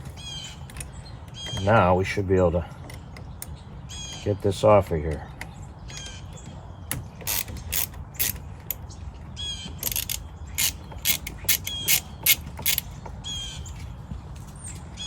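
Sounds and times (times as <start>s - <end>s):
ratchet clicking: 6.9s - 8.8s, 9.8s - 12.9s.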